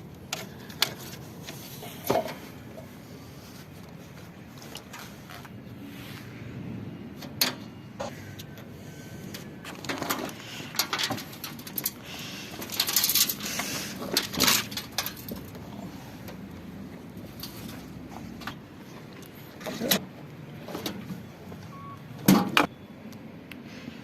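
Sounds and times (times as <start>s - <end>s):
hand tools clicking on metal parts: 9.3s - 16.6s.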